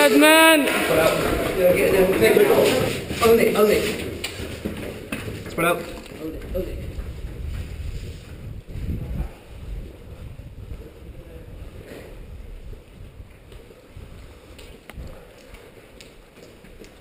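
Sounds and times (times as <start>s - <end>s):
low rumbling on camera microphone: 5.4s - 15.4s.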